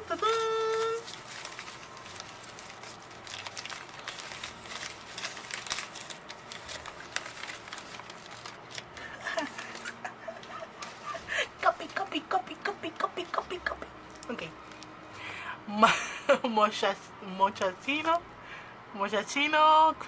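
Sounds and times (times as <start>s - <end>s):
soap packaging crinkling: 0.0s - 11.1s.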